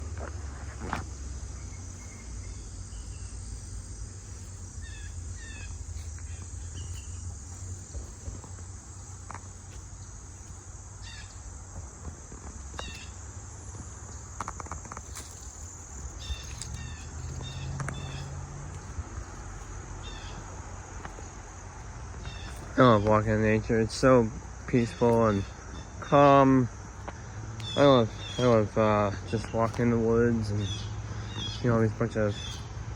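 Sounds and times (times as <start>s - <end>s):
birds chirping: 0.0s - 32.9s
high insect drone: 0.0s - 32.9s.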